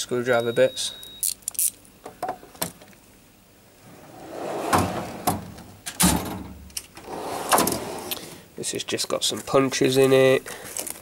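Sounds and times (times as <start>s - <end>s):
metal drawer sliding on runners: 3.8s - 8.2s
heavy drawer clunk: 3.9s - 8.1s.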